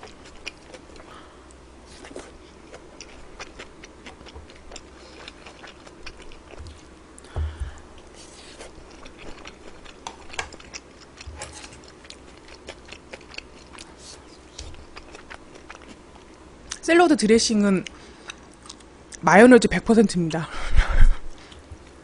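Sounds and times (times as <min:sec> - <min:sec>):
chewing with sharp clicks: 0:00.0 - 0:07.3, 0:08.6 - 0:16.8, 0:17.8 - 0:19.2
dull low thump: 0:06.6 - 0:07.8.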